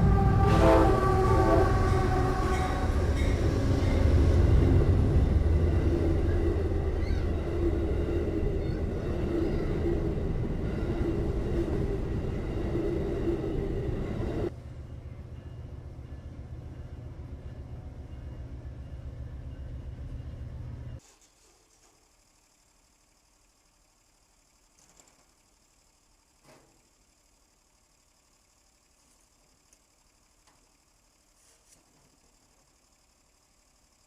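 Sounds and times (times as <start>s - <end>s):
train horn chord: 0.0s - 4.2s
low hum: 0.0s - 21.0s
train rumbling and rattling: 0.0s - 21.0s.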